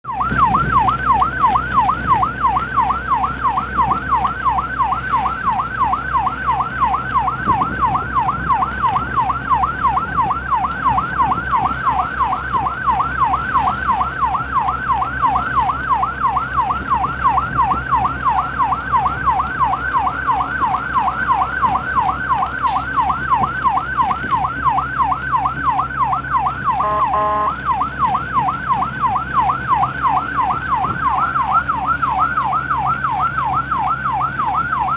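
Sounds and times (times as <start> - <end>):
siren yelping: 0.0 - 34.9
low engine hum: 0.1 - 34.9
short horn blast: 26.8 - 27.6.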